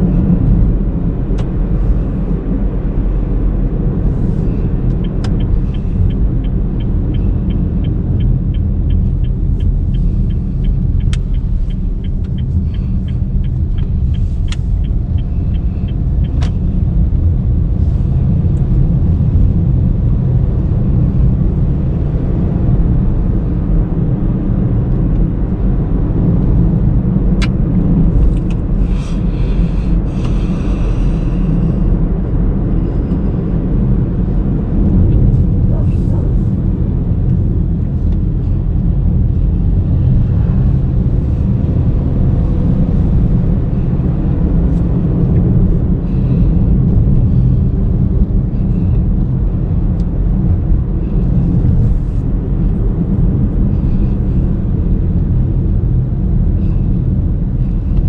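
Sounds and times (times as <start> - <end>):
car road and engine rumble: 0.0 - 58.0.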